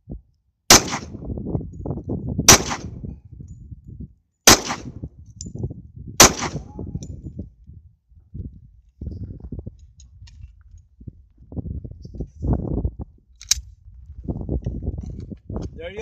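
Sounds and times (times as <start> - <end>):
pistol shots with echo: 0.7 - 1.2, 2.5 - 3.0, 4.5 - 5.0, 6.2 - 6.8.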